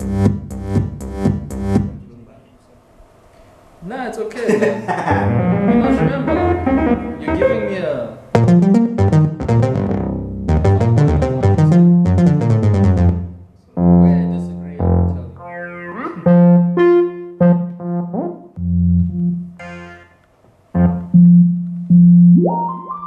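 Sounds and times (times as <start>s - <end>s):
sustained synth bass: 5.1s - 7.6s, 8.4s - 20.0s, 20.7s - 23.0s
synthesizer fast note run: 5.2s - 20.2s, 20.8s - 23.0s.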